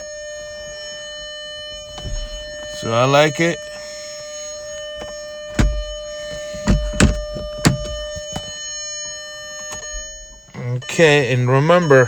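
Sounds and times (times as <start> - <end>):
thumps and clicks: 5.0 - 8.6.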